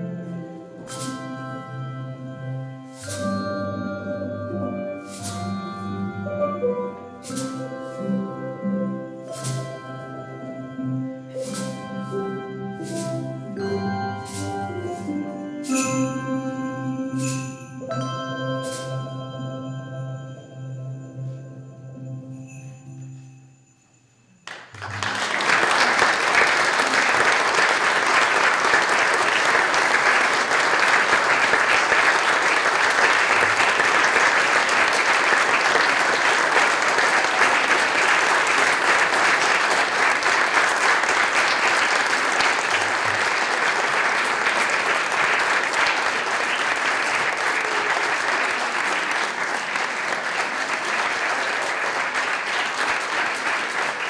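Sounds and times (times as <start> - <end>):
audience applauding: 24.4 - 54.0.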